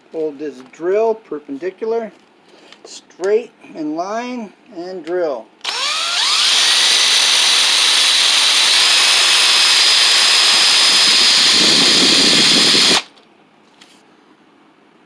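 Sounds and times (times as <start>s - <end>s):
electric drill boring into wood: 5.6s - 13.1s.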